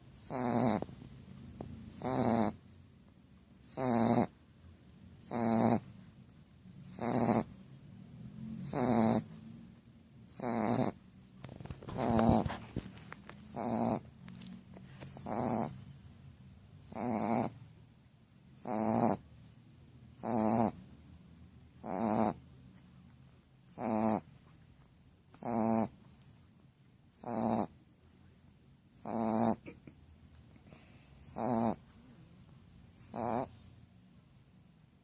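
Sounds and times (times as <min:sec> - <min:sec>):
dog snoring: 0:00.1 - 0:01.0, 0:01.8 - 0:02.6, 0:03.6 - 0:04.4, 0:05.2 - 0:06.0, 0:06.8 - 0:07.6, 0:08.5 - 0:09.4, 0:10.2 - 0:15.8, 0:16.8 - 0:17.6, 0:18.5 - 0:19.3, 0:20.1 - 0:20.8, 0:21.7 - 0:22.4, 0:23.6 - 0:24.3, 0:25.3 - 0:26.2, 0:27.1 - 0:27.8, 0:28.9 - 0:29.8, 0:31.2 - 0:31.9, 0:32.9 - 0:33.7.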